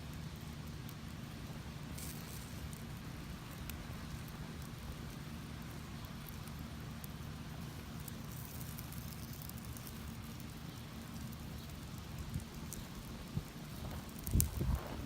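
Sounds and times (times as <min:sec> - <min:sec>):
fire crackling: 0:00.0 - 0:15.0
wind buffeting microphone: 0:12.2 - 0:15.0.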